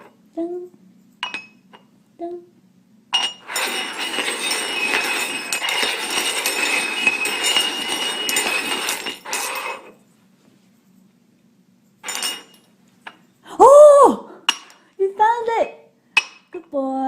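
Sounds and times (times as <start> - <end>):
hard cups clattering on surface: 3.2 - 10.0, 12.0 - 13.2.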